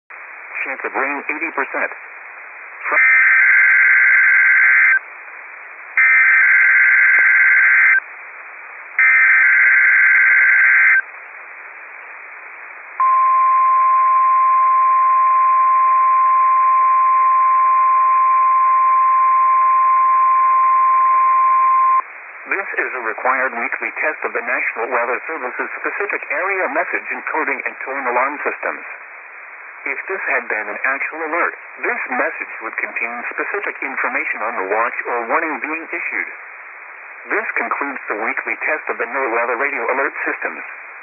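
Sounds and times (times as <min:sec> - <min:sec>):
receiver hiss: 0:00.1 - 0:41.0
digital data tone bursts: 0:06.0 - 0:08.0, 0:09.0 - 0:11.0
steady warning alarm tone: 0:06.0 - 0:08.0, 0:09.0 - 0:11.0.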